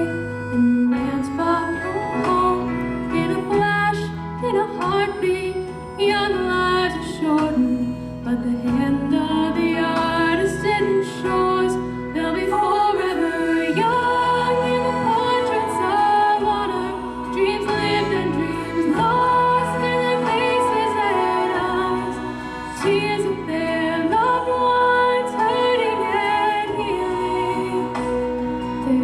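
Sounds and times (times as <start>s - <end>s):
instrumental accompaniment: 0.0s - 29.0s
person singing: 0.0s - 29.0s.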